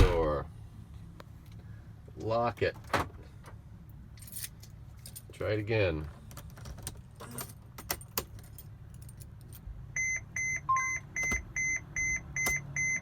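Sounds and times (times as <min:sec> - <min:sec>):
keys jangling in ignition: 0:04.1 - 0:05.4, 0:06.3 - 0:09.7
dashboard warning chime beeping: 0:10.0 - 0:13.0.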